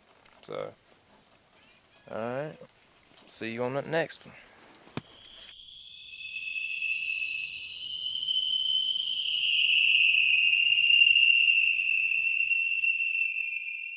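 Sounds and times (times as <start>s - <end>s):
steady high-pitched tone: 5.2s - 13.9s.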